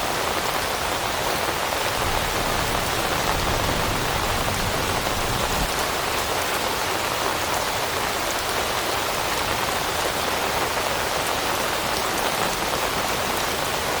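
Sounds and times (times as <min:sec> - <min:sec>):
rain pattering on leaves: 0:00.0 - 0:14.0.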